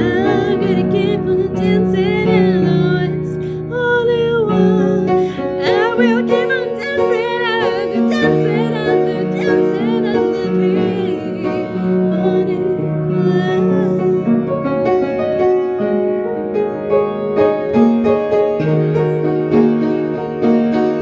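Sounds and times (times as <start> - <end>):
wavering gliding melody: 0.0 - 14.6.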